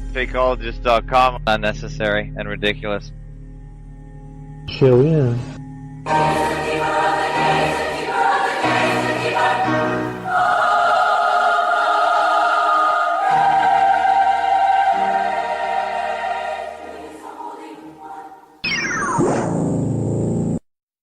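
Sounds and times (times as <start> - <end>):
choir singing: 6.0 - 18.6.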